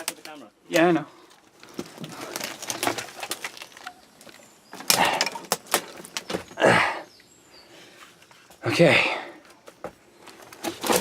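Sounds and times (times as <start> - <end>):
scuffs and scrapes on rubble: 1.2 - 6.2.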